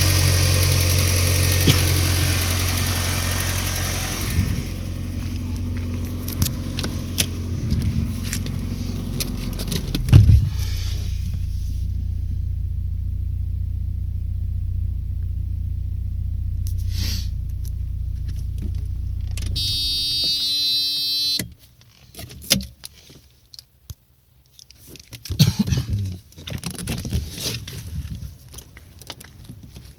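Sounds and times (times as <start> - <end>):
car engine idling: 0.0 - 21.4
warning buzzer tone: 19.6 - 21.4.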